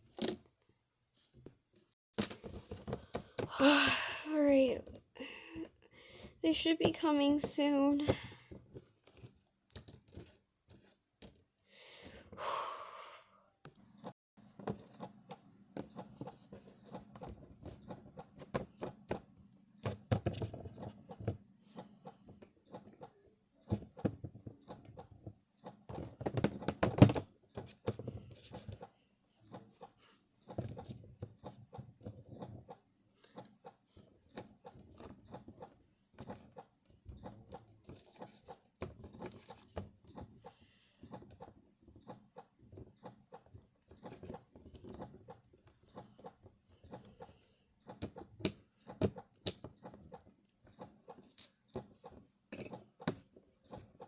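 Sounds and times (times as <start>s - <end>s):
soft breath: 5.2s - 6.4s, 8.0s - 8.7s, 11.6s - 13.6s, 40.4s - 41.3s
plastic toy figures being handled: 6.2s - 11.6s.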